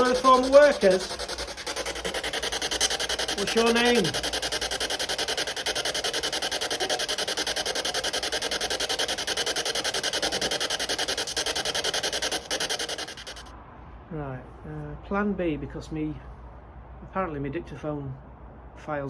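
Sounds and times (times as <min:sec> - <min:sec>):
pulsing radio static: 0:00.0 - 0:13.5.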